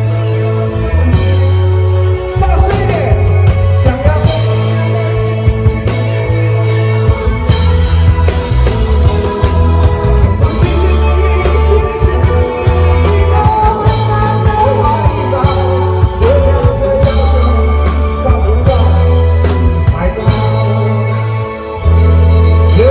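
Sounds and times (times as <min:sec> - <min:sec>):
rock band playing live: 0:00.0 - 0:22.9
person singing: 0:09.2 - 0:22.9.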